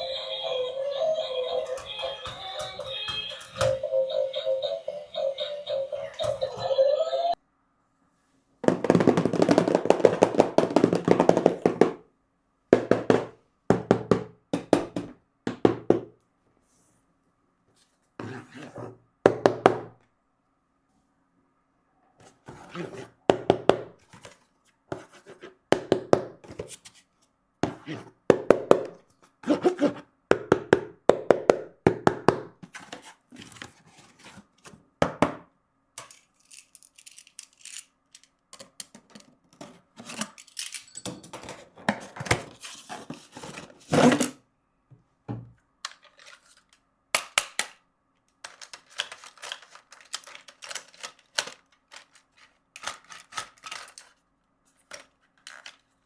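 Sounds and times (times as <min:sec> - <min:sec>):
packaging scratching and crinkling: 0:48.4 - 0:54.2.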